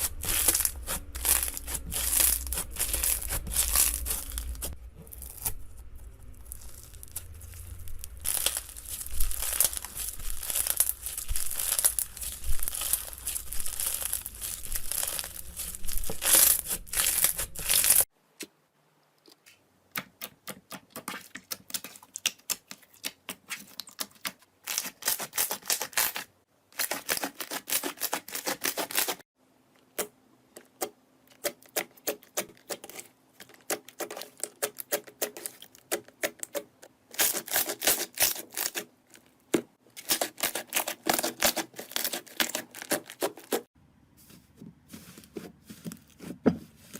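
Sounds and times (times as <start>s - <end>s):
slime crackling and popping: 0.0s - 18.1s.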